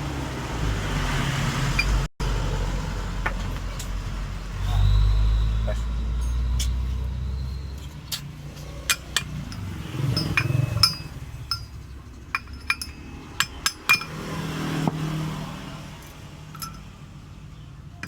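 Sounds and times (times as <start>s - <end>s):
metal tools tapping metal: 7.8s - 14.3s, 16.0s - 17.0s.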